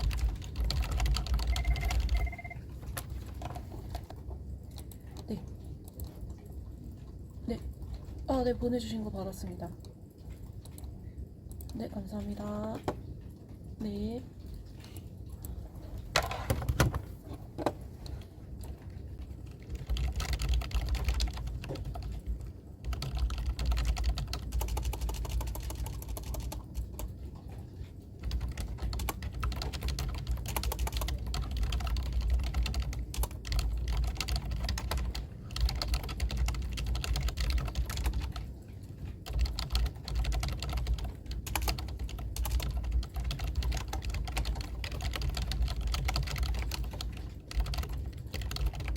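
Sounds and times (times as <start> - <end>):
fast typing on keyboard: 0.0 - 6.4, 18.0 - 48.9.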